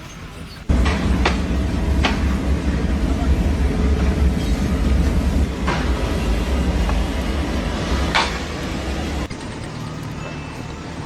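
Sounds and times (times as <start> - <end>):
heavy vehicle rumbling: 0.7 - 9.4.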